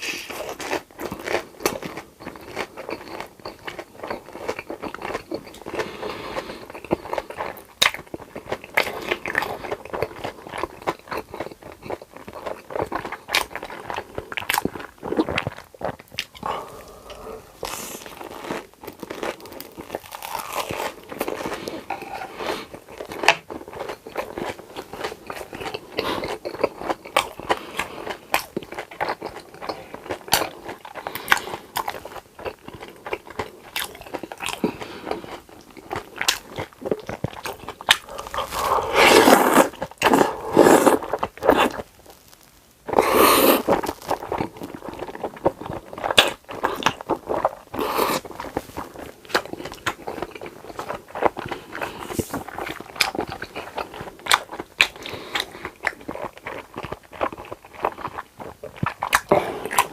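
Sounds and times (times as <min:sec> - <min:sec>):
chewing with wet mouth clicks: 0:22.9 - 0:38.6, 0:43.7 - 0:59.9.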